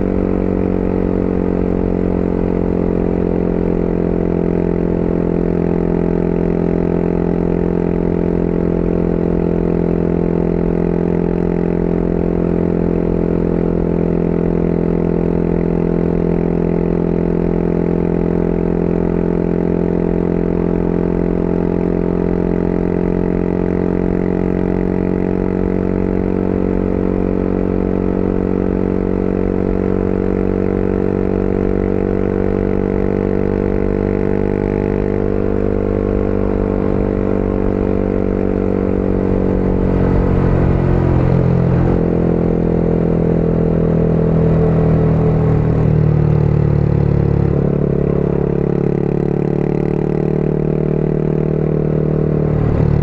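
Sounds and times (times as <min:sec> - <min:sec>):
motorcycle engine running: 0:00.0 - 0:53.0.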